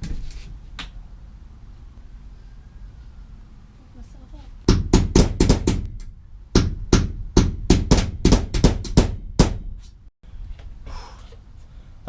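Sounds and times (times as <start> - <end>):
hammer striking steel punch: 4.7 - 9.8.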